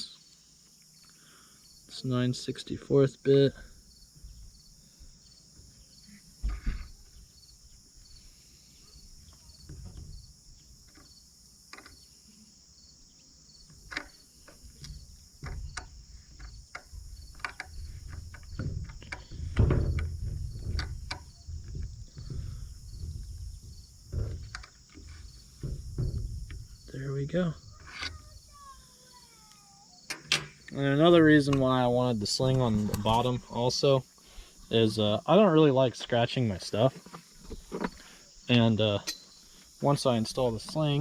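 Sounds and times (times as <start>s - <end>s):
crickets chirping: 0.0s - 41.0s.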